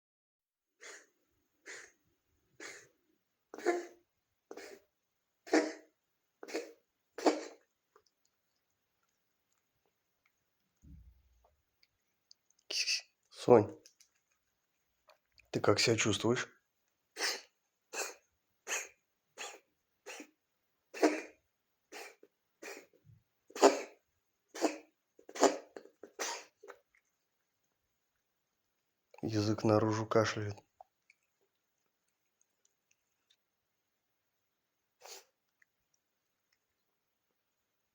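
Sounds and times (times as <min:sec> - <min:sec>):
cat coughing: 0:02.6 - 0:02.9, 0:03.6 - 0:04.8, 0:05.4 - 0:07.7, 0:17.2 - 0:26.7.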